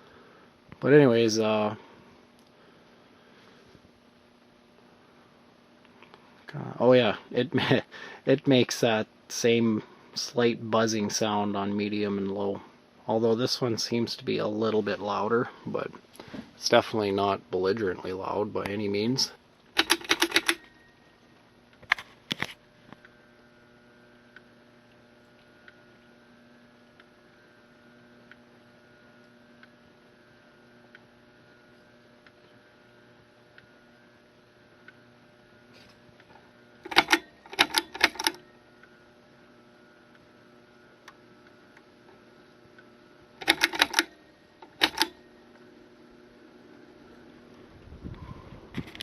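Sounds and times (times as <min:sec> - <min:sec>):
ceiling fan motor humming: 0:00.0 - 0:49.0
sharp rattling clicks: 0:19.8 - 0:20.6, 0:36.9 - 0:38.4, 0:43.4 - 0:45.2.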